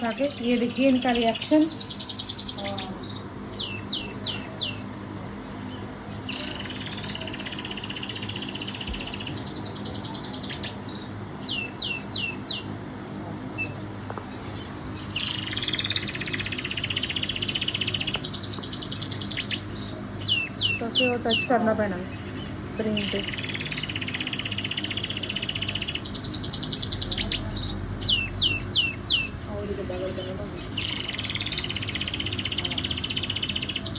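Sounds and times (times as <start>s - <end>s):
recorded canary song from phone speaker: 0.0s - 33.9s.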